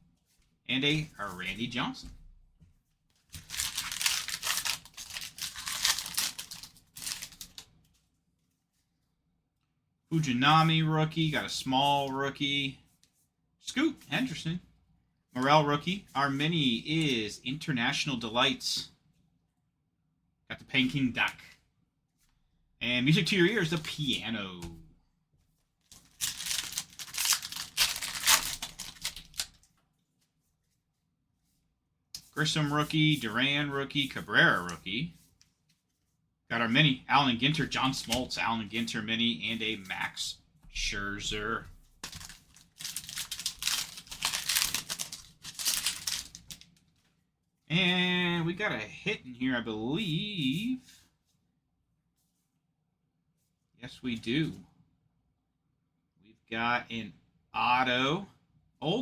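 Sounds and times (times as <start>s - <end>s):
wrapper tearing and crinkling: 3.4s - 7.7s, 25.9s - 29.7s, 42.0s - 46.7s.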